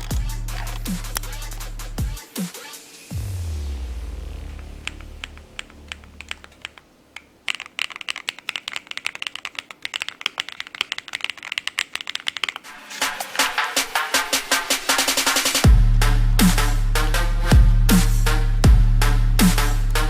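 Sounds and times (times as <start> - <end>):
electronic music: 0.0 - 6.5
bass music note: 3.2 - 6.2
keyboard typing: 4.8 - 12.6.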